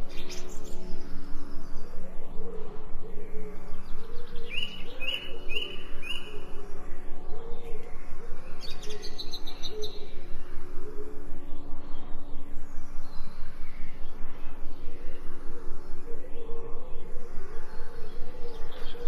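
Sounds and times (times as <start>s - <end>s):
steady low background: 0.0s - 19.0s.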